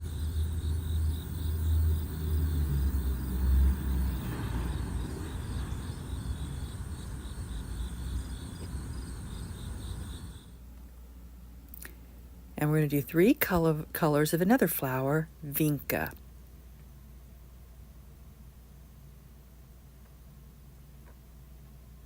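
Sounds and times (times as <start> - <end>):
insects chirping: 0.0 - 10.6
low rumble: 0.0 - 10.6.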